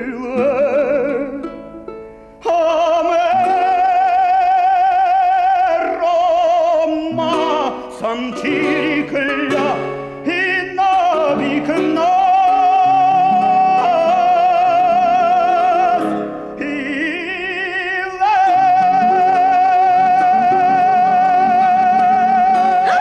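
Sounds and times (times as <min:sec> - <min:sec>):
person singing with vibrato: 0:00.0 - 0:23.0
instrumental accompaniment: 0:07.0 - 0:23.0.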